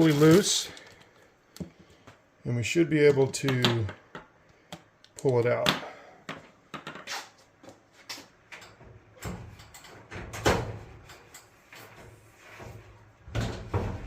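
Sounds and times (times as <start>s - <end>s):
dryer drum knocking and scraping: 11.8s - 14.0s.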